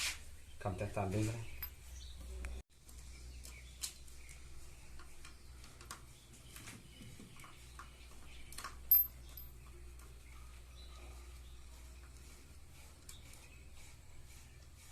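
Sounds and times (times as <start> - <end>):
tools clicking and tapping: 8.6 - 10.1.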